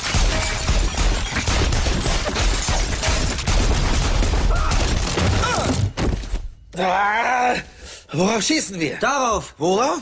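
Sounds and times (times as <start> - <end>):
rapid continuous gunfire: 0.0 - 5.4.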